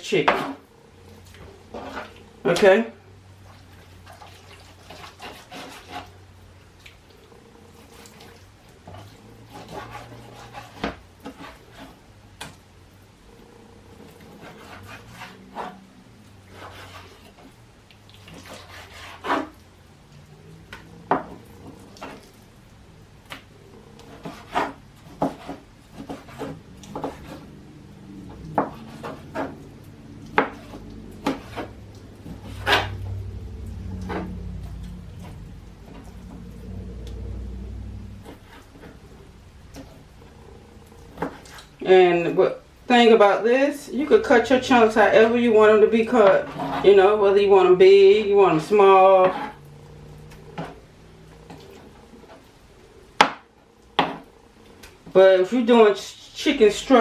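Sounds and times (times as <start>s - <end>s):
faint low hum: 0.0s - 57.0s
knife cutting on cutting board: 41.1s - 41.7s.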